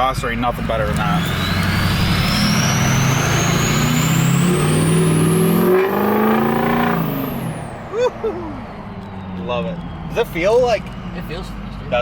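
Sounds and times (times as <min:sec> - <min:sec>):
diesel engine accelerating: 0:00.0 - 0:12.0
turbo whistling: 0:01.2 - 0:10.7.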